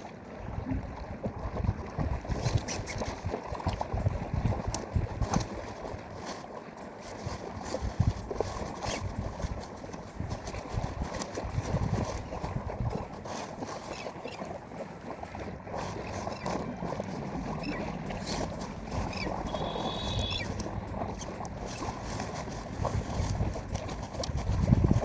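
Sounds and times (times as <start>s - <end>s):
fast-flowing river: 0.0s - 25.0s
brief high tone: 19.4s - 20.5s.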